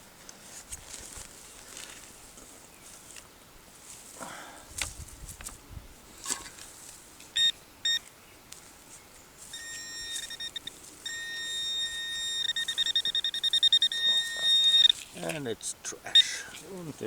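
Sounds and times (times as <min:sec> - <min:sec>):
metal detector pinpointer beeping: 0:07.3 - 0:08.1, 0:09.4 - 0:15.5, 0:16.1 - 0:16.6.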